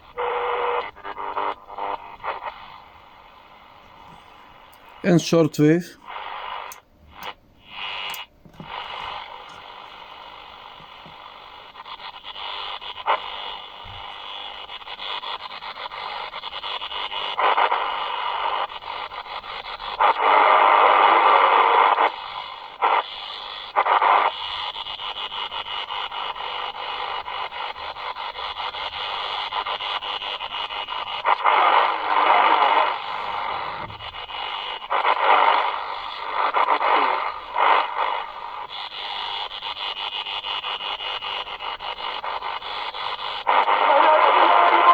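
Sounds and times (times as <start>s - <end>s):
radio static hiss: 0.0s - 44.9s
shortwave radio signal: 0.0s - 44.9s.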